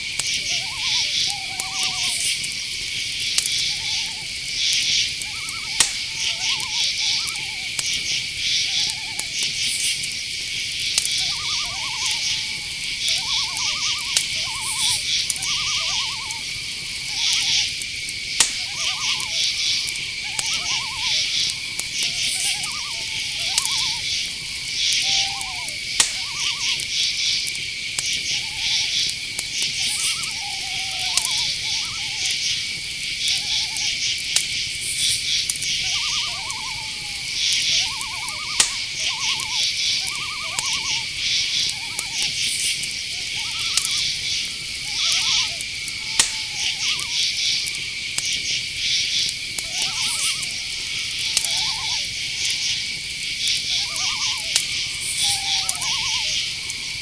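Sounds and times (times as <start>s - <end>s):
crickets chirping: 0.0s - 57.0s
owl hooting: 0.0s - 57.0s
sharp clicks: 4.7s - 10.2s, 10.9s - 30.3s, 34.2s - 43.0s, 43.6s - 48.5s.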